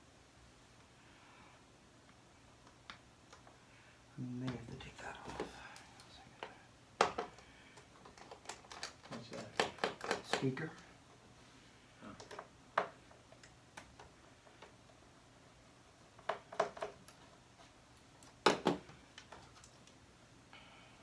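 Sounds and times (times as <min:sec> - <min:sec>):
small parts clicking and knocking: 0:06.4 - 0:10.8, 0:12.0 - 0:14.9, 0:16.1 - 0:17.4.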